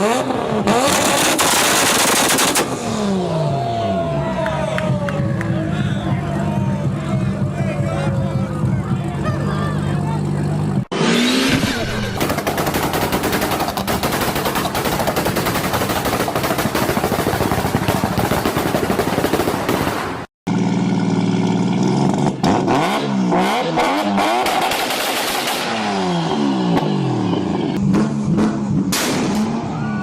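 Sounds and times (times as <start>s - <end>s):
car engine revving: 0.0s - 15.4s, 20.5s - 29.8s
exhaust crackling and popping: 0.7s - 2.9s, 11.5s - 20.0s.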